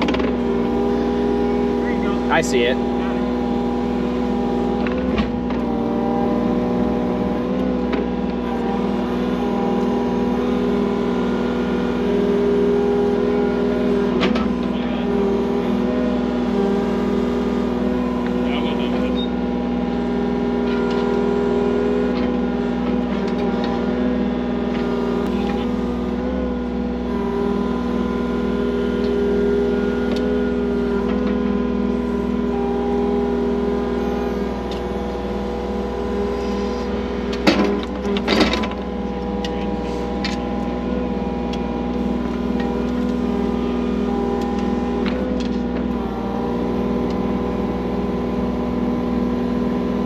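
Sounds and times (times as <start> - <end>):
skid loader engine running: 0.0 - 50.0.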